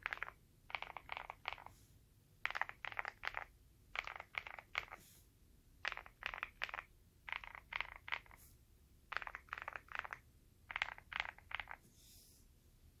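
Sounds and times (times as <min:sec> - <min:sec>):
mechanical keyboard typing: 0:00.0 - 0:01.7, 0:02.5 - 0:05.0, 0:05.8 - 0:08.4, 0:09.1 - 0:11.8.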